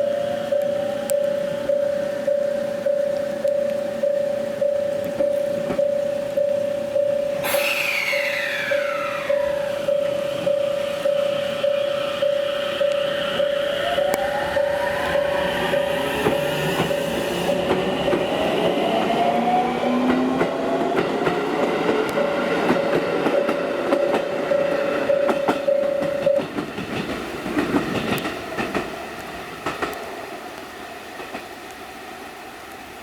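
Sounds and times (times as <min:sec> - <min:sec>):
electric train motors whining: 0:06.9 - 0:22.5
pulsed beeping tone: 0:08.0 - 0:18.1
wheels clicking over rail joints: 0:20.0 - 0:30.1.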